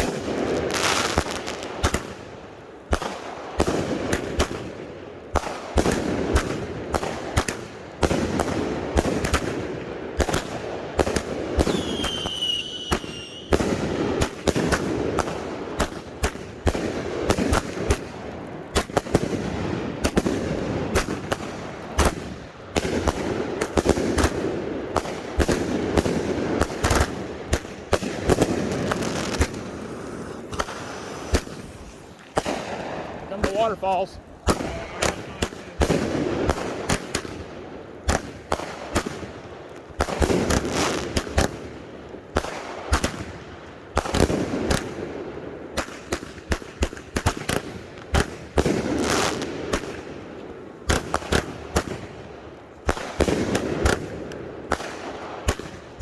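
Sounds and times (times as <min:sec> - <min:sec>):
fireworks launching and bursting: 0:00.0 - 0:56.0
firework whistling: 0:11.6 - 0:14.8, 0:28.2 - 0:32.7.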